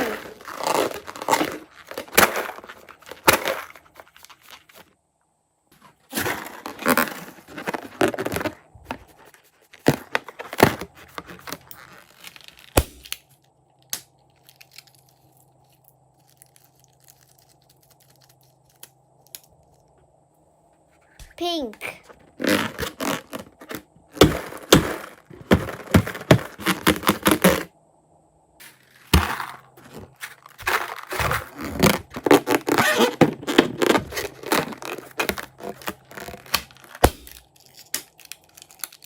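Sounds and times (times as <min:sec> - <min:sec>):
slime crackling and tearing: 0:00.0 - 0:03.4, 0:16.2 - 0:19.4, 0:31.0 - 0:39.0
faint low hum: 0:00.0 - 0:39.0.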